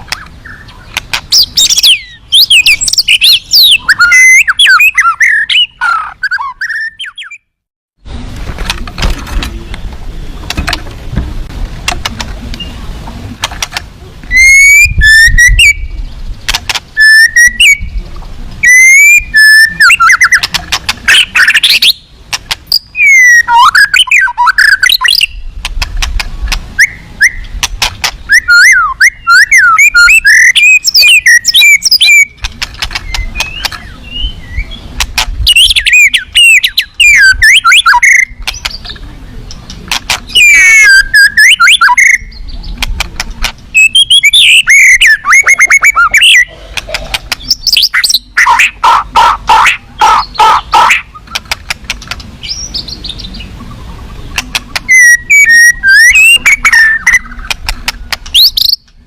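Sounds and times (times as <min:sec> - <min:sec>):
bird singing whistled phrases: 0:00.4 - 0:07.5, 0:14.3 - 0:16.0, 0:17.0 - 0:18.0, 0:18.6 - 0:20.5, 0:21.1 - 0:22.1, 0:22.7 - 0:25.5, 0:26.8 - 0:27.5, 0:28.3 - 0:32.4, 0:33.0 - 0:34.8, 0:35.4 - 0:38.9, 0:40.3 - 0:42.6, 0:43.8 - 0:46.5, 0:47.5 - 0:48.6, 0:54.8 - 0:57.5, 0:58.4 - 0:58.8
sharp clicks: 0:00.9 - 0:01.4, 0:11.8 - 0:12.6, 0:13.4 - 0:13.9, 0:16.4 - 0:16.9, 0:20.2 - 0:21.1, 0:22.3 - 0:22.8, 0:25.0 - 0:26.7, 0:27.4 - 0:28.2, 0:31.8 - 0:33.8, 0:38.0 - 0:40.4, 0:42.7 - 0:43.6, 0:46.8 - 0:48.2, 0:50.8 - 0:52.3, 0:54.3 - 0:55.0, 0:56.4 - 0:59.0.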